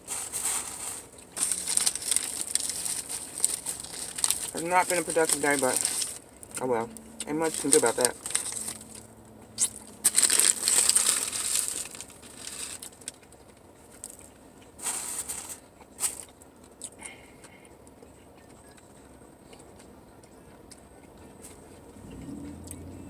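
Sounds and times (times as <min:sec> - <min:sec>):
food wrapper crinkling: 0:00.0 - 0:06.6, 0:07.4 - 0:16.4.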